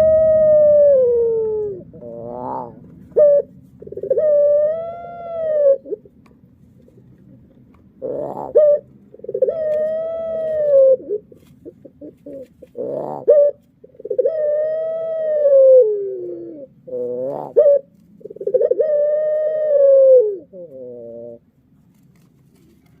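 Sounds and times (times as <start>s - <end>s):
dove cooing: 0.0s - 6.2s, 7.3s - 21.4s.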